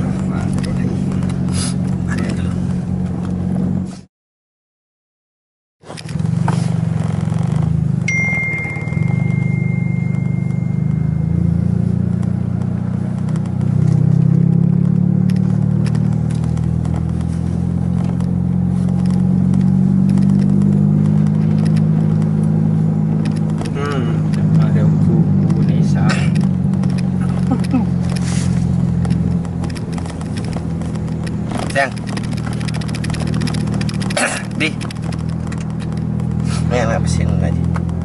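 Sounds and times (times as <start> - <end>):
car engine drone: 0.0 - 4.1, 5.8 - 38.0
road noise: 0.0 - 4.1, 5.8 - 38.0
thin high steady tone: 8.1 - 11.7.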